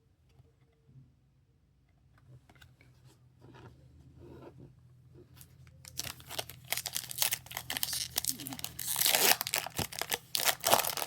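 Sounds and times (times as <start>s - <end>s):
trading cards rustling: 5.8s - 11.0s
wrapper crinkling torn open: 5.8s - 11.0s.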